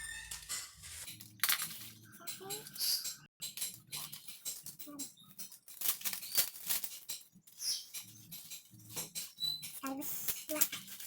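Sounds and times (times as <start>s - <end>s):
packaging rustling and scratching: 3.8s - 11.0s.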